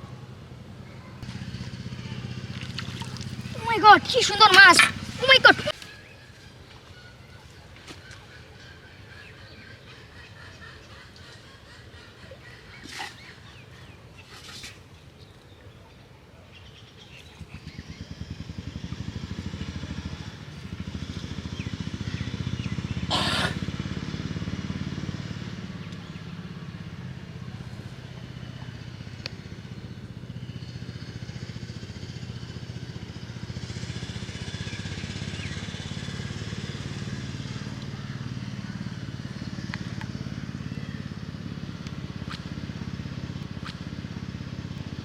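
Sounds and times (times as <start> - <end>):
small engine running: 0.1 - 6.5, 17.2 - 45.0.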